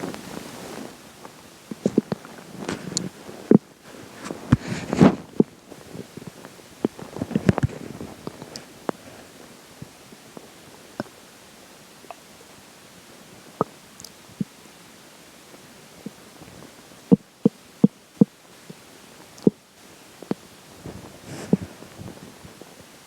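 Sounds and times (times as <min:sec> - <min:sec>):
stomach gurgling and rumbling: 0:00.0 - 0:11.2, 0:20.2 - 0:23.0.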